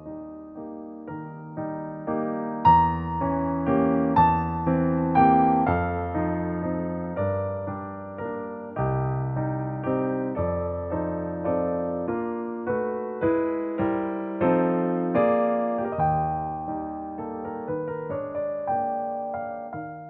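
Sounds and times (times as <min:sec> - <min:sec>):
electric piano chords: 0:00.0 - 0:20.0.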